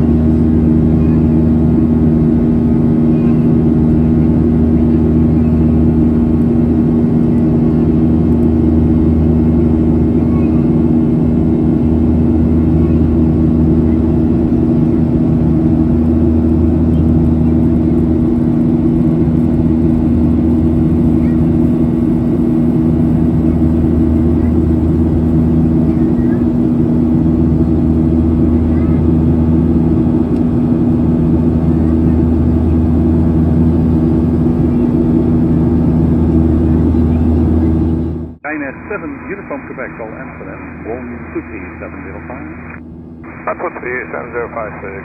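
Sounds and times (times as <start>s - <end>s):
jet engines droning in cabin: 0.0s - 45.0s.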